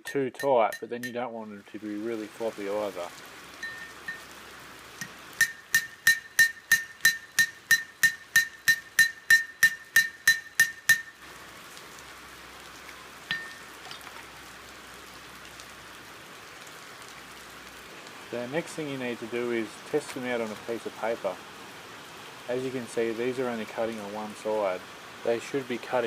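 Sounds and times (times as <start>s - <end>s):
hammer tapping metal with ringing: 0.0s - 1.3s, 5.4s - 11.2s, 13.3s - 13.6s.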